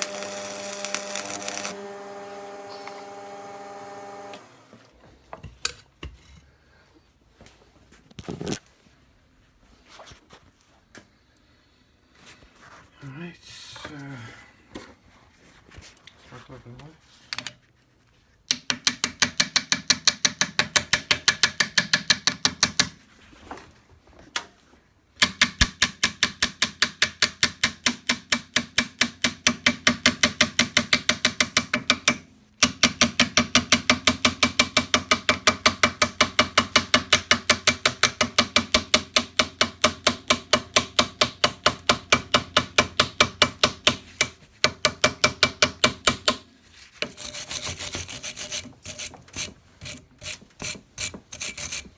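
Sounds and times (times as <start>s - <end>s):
welding arc crackling: 0.0s - 3.8s.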